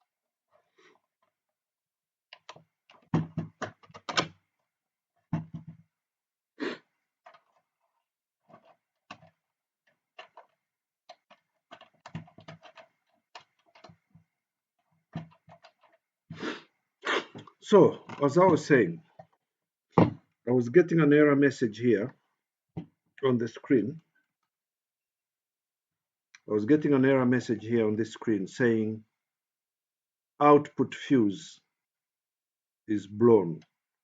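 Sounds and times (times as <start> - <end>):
parts clicking and knocking: 2.3 - 4.6, 5.2 - 5.9, 8.5 - 16.1.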